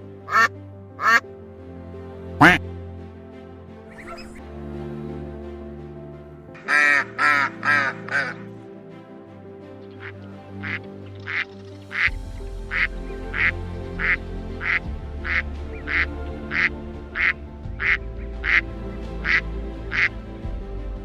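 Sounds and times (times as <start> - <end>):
background music: 0.0 - 21.0
duck quacking: 0.3 - 1.2, 2.4 - 2.6, 6.6 - 8.4, 12.7 - 18.6.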